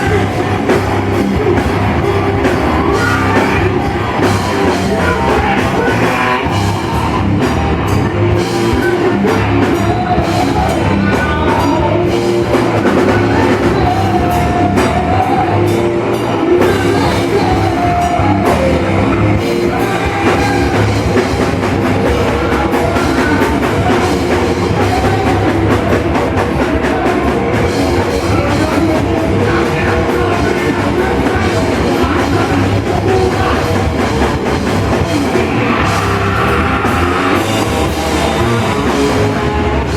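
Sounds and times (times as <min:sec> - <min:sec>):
distorted instruments: 0:00.0 - 0:39.9
drum kit pounding: 0:00.0 - 0:39.9
person singing: 0:00.0 - 0:39.9.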